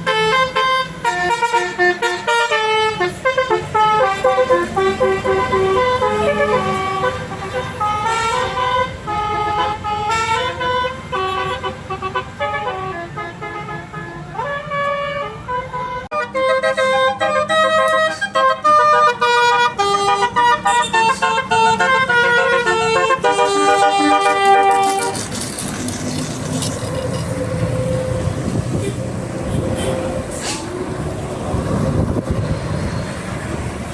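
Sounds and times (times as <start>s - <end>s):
multi-tone air horn melody: 0.0s - 25.5s.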